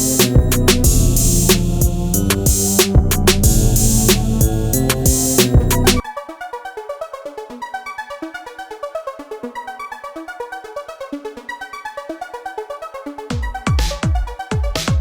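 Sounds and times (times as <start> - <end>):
ticking electronic beat: 0.0 - 6.0, 13.3 - 15.0
synthesizer arpeggio: 0.0 - 13.7.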